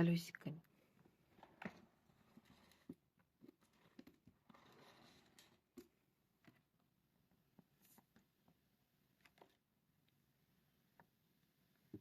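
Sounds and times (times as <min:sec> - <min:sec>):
wheeled box rolling on floor: 0:01.3 - 0:05.7.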